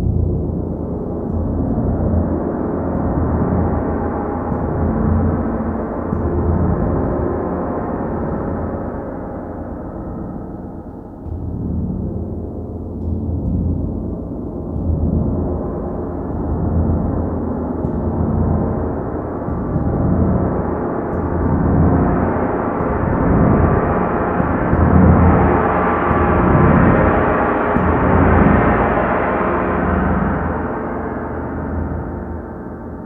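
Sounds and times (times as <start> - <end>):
gong struck with mallet: 15.1 - 32.4.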